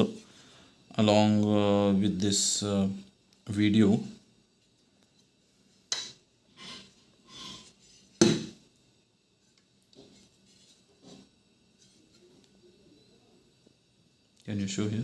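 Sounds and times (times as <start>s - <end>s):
metal scraping: 5.9s - 8.3s, 9.4s - 12.4s.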